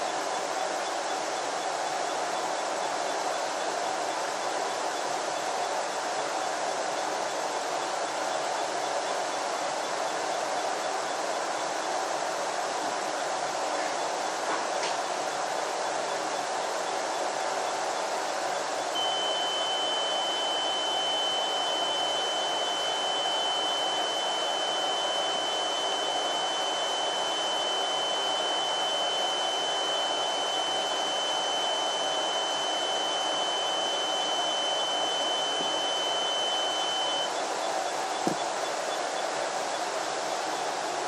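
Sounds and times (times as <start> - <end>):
high-pitched buzzer tone: 18.8 - 40.9.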